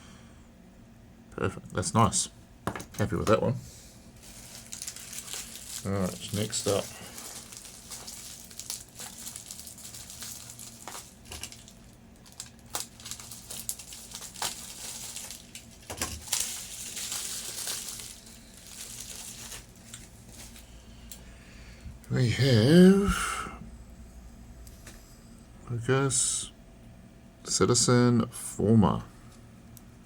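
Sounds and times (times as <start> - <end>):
packaging crinkling and rustling: 4.1 - 21.2.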